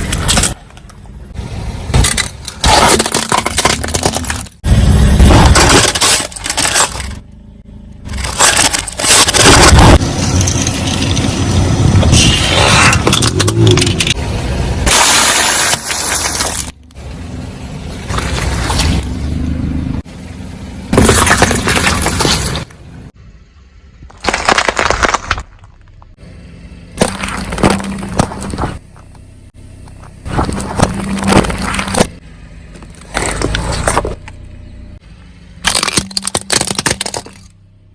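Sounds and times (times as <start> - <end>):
objects crunching under car tyres: 1.8 - 14.2, 14.8 - 16.8, 18.0 - 19.3, 20.9 - 22.8, 24.0 - 26.2, 26.9 - 35.0, 35.6 - 37.6.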